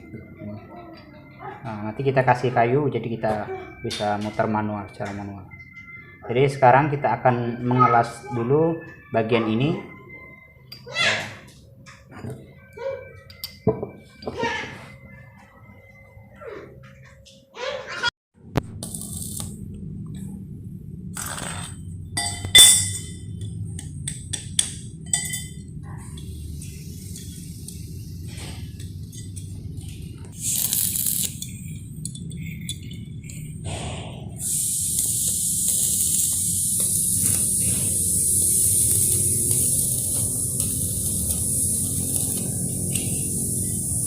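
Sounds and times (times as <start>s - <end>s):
steady low hum: 18.4s - 44.0s
arc welding crackling sizzle: 18.7s - 19.8s, 23.7s - 33.7s, 34.4s - 44.0s.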